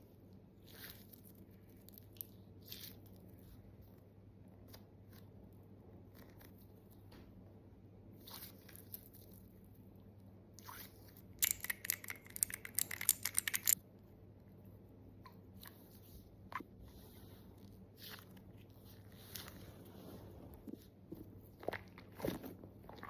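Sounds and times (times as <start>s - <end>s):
hands rustling toy: 11.0s - 13.8s
toy crackling and crinkling: 11.2s - 13.8s.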